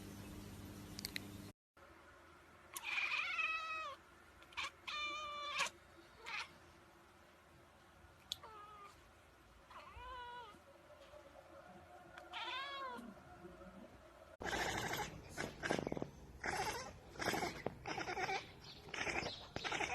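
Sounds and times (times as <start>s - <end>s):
cat meowing: 2.8s - 6.6s, 8.4s - 9.0s, 9.7s - 10.6s, 12.2s - 13.2s, 14.4s - 19.9s.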